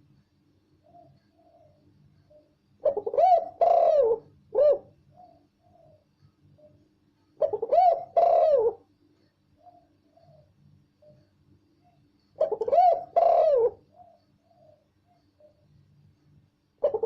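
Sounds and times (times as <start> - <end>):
dove cooing: 0.8 - 6.0, 7.4 - 8.9, 9.6 - 10.5, 12.4 - 15.6, 16.8 - 17.0.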